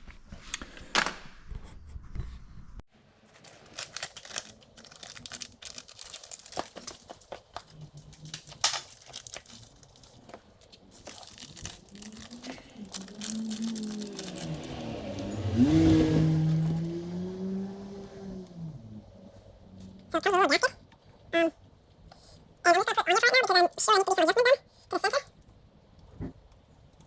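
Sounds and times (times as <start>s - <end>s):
packaging crinkling and tearing: 3.2s - 15.5s, 16.4s - 16.9s
small parts clicking: 3.4s - 14.7s
low rising and falling tone: 11.8s - 20.1s.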